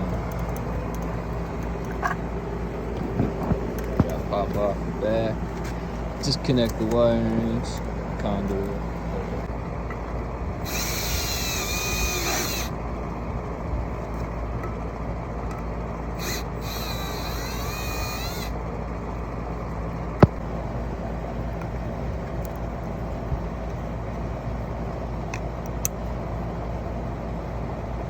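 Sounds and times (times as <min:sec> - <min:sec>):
low hum: 0:00.0 - 0:28.0
cordless drill whirring: 0:10.6 - 0:12.8, 0:16.1 - 0:18.6.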